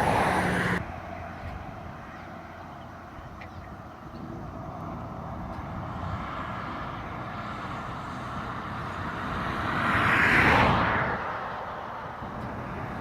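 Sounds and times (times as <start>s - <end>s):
car driving past: 0.0s - 0.8s, 5.9s - 13.0s.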